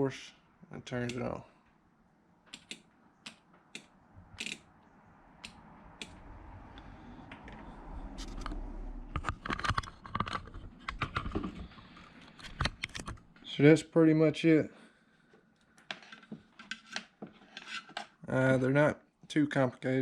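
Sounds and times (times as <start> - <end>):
low rumble: 5.0 - 9.6.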